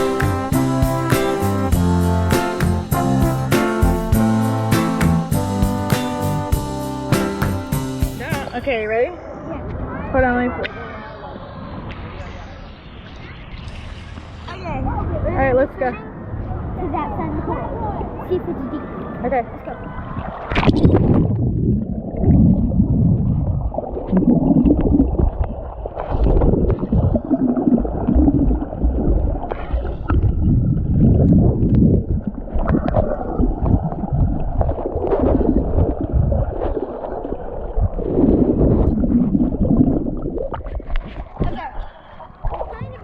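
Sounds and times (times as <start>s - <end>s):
water splash: 19.9s - 41.6s
underwater gurgling and bubbling: 20.0s - 41.6s.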